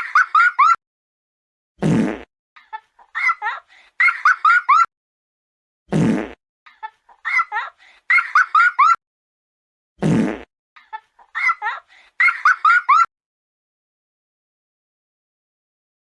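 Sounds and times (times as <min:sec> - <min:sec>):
cartoon fart sound effect: 0:01.8 - 0:02.3, 0:05.9 - 0:06.4, 0:10.0 - 0:10.5
high-pitched squeaky giggles: 0:02.6 - 0:04.9, 0:06.7 - 0:09.0, 0:10.8 - 0:13.1.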